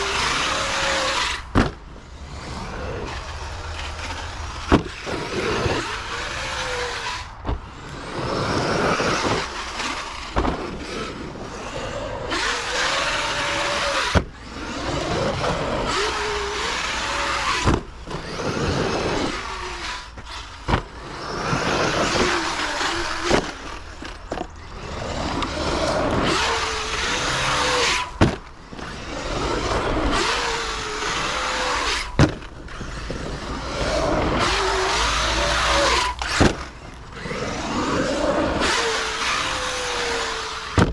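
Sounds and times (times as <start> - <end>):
electric motor whining: 0.0 - 40.9
sharp knocks from landings: 1.5 - 1.8, 25.4 - 29.0, 31.0 - 33.2, 35.8 - 36.7.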